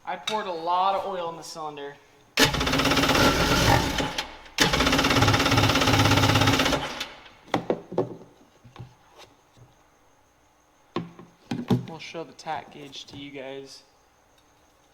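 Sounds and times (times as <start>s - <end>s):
knocks: 7.4s - 8.3s.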